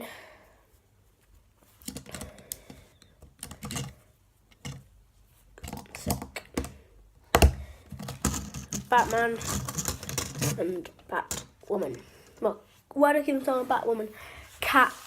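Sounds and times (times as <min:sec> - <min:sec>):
plastic pieces clicking and clattering: 0:03.2 - 0:04.8, 0:07.4 - 0:11.5.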